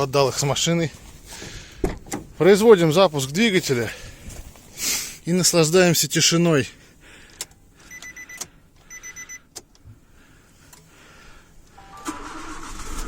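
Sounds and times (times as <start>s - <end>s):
car electronic beeps: 7.9s - 9.5s
car engine starting and running: 11.6s - 13.0s.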